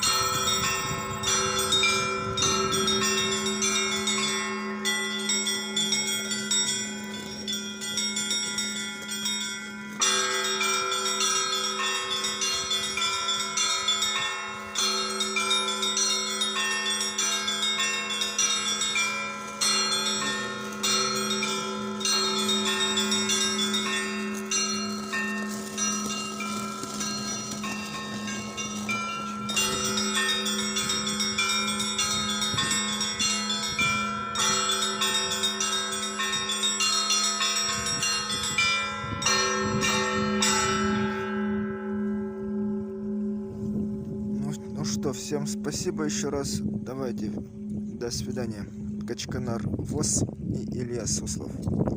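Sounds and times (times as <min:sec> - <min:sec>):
small bells ringing quickly: 0:00.0 - 0:41.9
big bell strikes: 0:00.0 - 0:51.9
steady low hum: 0:41.9 - 0:51.9.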